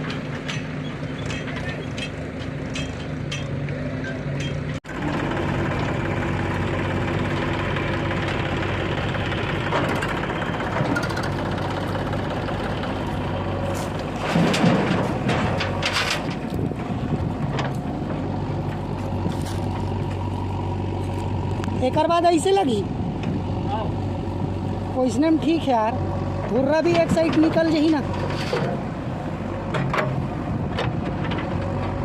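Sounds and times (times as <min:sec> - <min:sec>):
diesel engine running: 0:00.0 - 0:32.0
engine knocking: 0:04.9 - 0:13.0.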